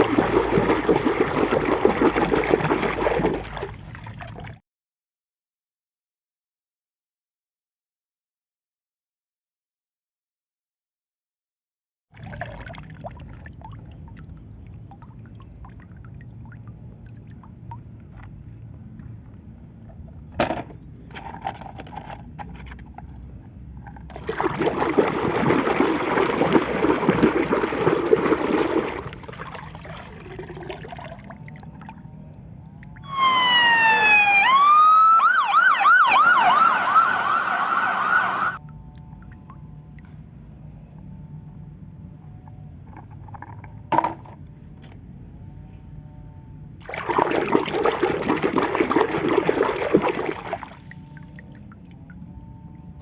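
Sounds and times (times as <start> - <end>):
rushing water-like noise: 0.0 - 4.4, 24.2 - 31.1
electronic siren wailing: 33.0 - 38.6.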